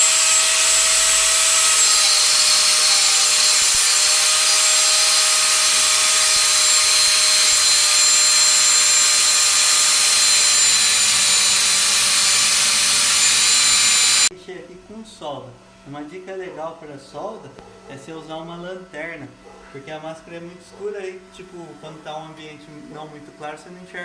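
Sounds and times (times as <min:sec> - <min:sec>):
angle grinder motor whine: 0:00.0 - 0:14.3
grinding disc hissing on metal: 0:00.0 - 0:14.3.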